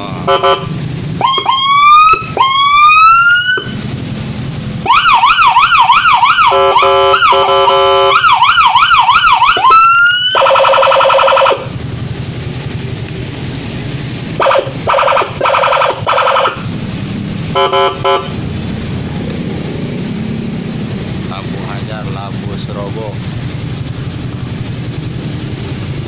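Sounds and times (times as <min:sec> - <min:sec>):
electronic siren wailing and warbling: 0:01.2 - 0:03.8, 0:04.8 - 0:11.7, 0:14.4 - 0:16.7
buzzy siren horn tone: 0:04.9 - 0:11.7, 0:14.4 - 0:16.6, 0:17.5 - 0:18.4.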